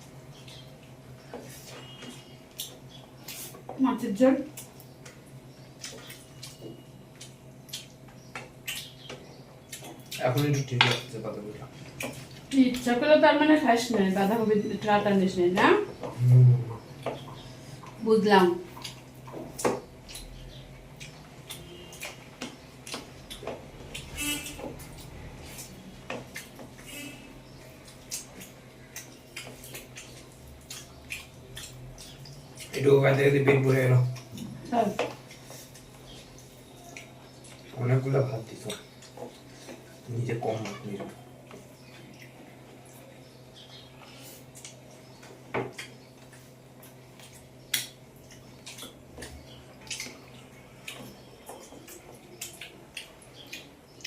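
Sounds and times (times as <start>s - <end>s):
soft eating clicks: 4.4s - 13.0s, 18.7s - 26.9s, 27.5s - 54.0s
chewing and mouth noises: 4.5s - 10.6s, 18.7s - 32.9s, 34.0s - 37.8s, 38.5s - 54.0s.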